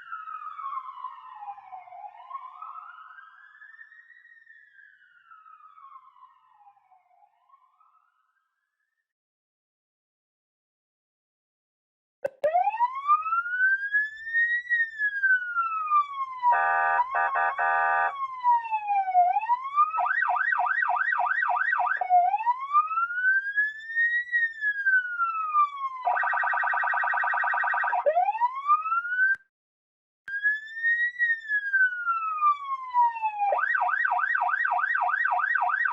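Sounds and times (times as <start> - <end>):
police siren wail: 0.0 - 8.3, 12.3 - 29.4, 30.3 - 35.9
fast siren yelp: 0.0 - 8.4, 12.3 - 29.4, 30.3 - 35.9
harsh buzzing horn tone: 16.6 - 18.1.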